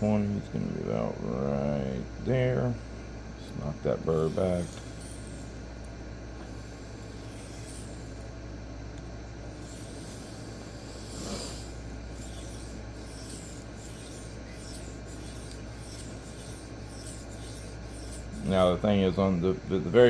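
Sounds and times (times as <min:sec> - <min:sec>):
low steady hum: 0:00.0 - 0:20.0
knife scraping on sharpening stone: 0:04.2 - 0:05.6, 0:06.4 - 0:08.2, 0:09.5 - 0:18.7.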